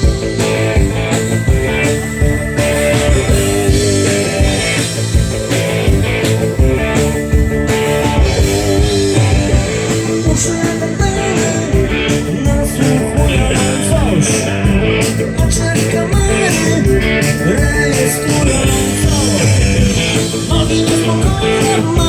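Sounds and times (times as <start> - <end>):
blues-rock band playing: 0.0 - 22.0
person singing: 10.0 - 22.0.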